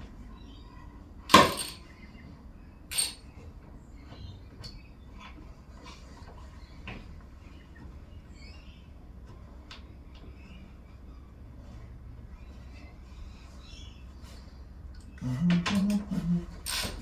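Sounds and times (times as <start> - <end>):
metal hand tools clinking: 1.3 - 1.8, 2.9 - 3.2.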